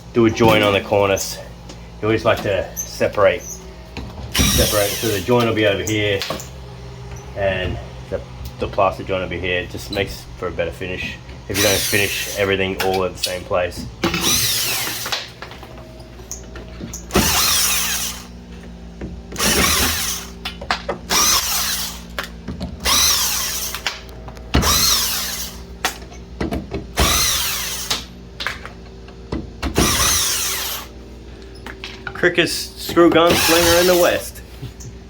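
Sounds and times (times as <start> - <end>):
screw gun driving screws: 4.4 - 5.5, 11.5 - 12.4, 14.0 - 15.3, 17.1 - 18.3, 19.4 - 20.3, 21.1 - 22.2, 22.8 - 24.0, 24.6 - 25.6, 27.0 - 28.1, 29.7 - 30.9, 33.2 - 34.3.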